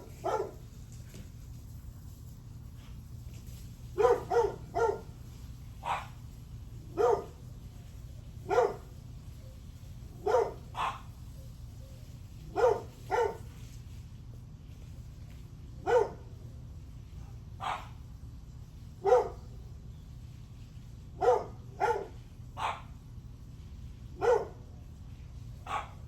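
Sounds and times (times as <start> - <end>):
dog barking: 0.0 - 0.6, 4.0 - 5.1, 5.8 - 6.2, 6.9 - 7.4, 8.4 - 8.9, 10.2 - 11.2, 12.5 - 13.5, 15.8 - 16.3, 17.6 - 18.0, 19.0 - 19.5, 21.2 - 23.0, 24.2 - 24.7, 25.6 - 26.0.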